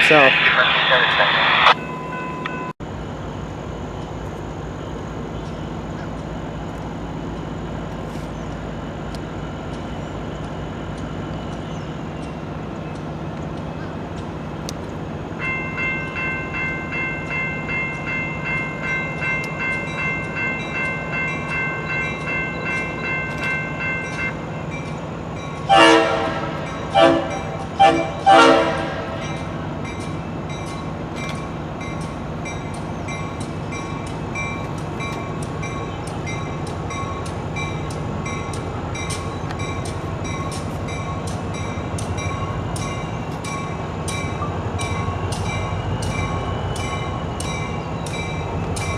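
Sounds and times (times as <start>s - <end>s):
train rumble: 0.0s - 48.9s
locomotive horn blasts: 25.7s - 29.4s.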